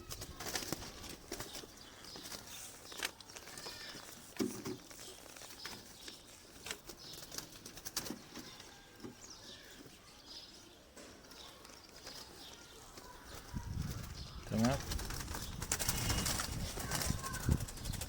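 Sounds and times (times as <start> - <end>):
pigeon wing flutters: 0.0 - 3.1, 12.9 - 18.0.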